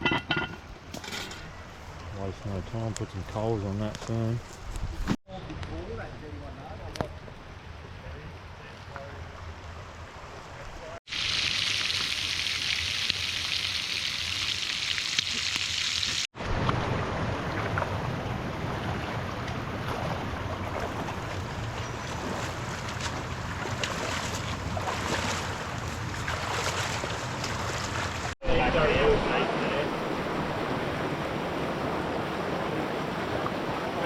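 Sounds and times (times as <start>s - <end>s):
river water rushing: 16.5s - 34.0s.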